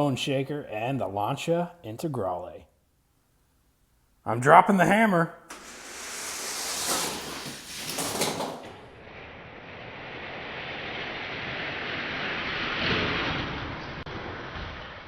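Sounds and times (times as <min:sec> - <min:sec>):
toy cars rolling down plastic track: 0:05.5 - 0:08.8
brief clatter: 0:05.5 - 0:08.9.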